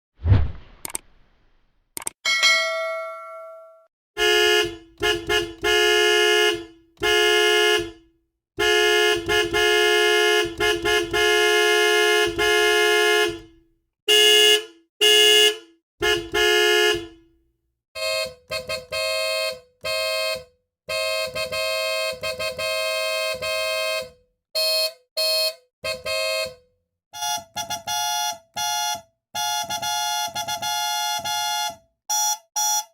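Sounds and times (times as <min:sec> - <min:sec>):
higher-pitched car horn: 0:04.2 - 0:08.0
loud low-pitched car horn: 0:04.2 - 0:08.0, 0:08.6 - 0:13.5, 0:14.1 - 0:17.2.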